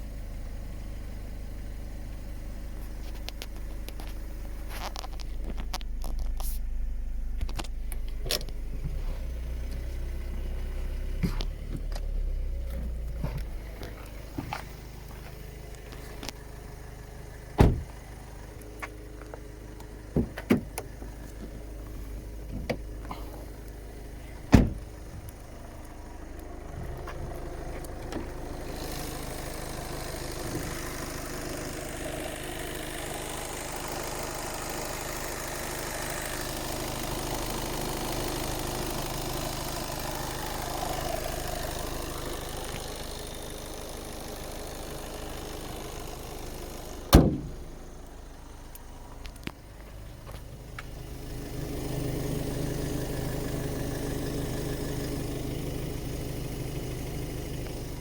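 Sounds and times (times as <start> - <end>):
diesel engine idling: 0.0 - 58.0
sharp clunking knocks: 17.6 - 18.0, 20.1 - 21.6, 24.5 - 25.3, 47.1 - 47.7.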